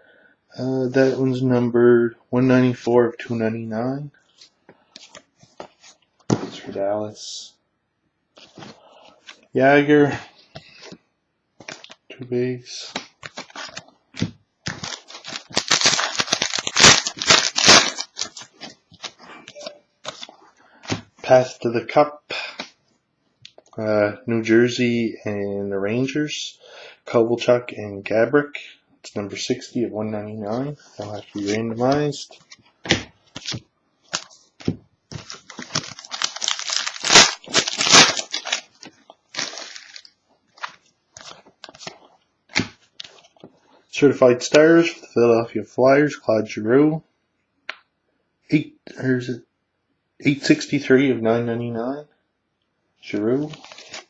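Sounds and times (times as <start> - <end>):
wrapper tearing and crinkling: 14.7 - 19.1, 35.2 - 42.0, 53.5 - 54.0
cards clicking and rustling: 14.7 - 21.0, 32.4 - 43.5, 53.5 - 54.0.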